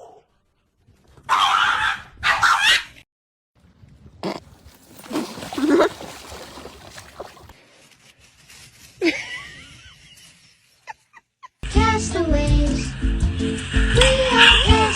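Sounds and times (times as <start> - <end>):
animal short calls: 4.2 - 7.5
rustling: 4.2 - 7.5.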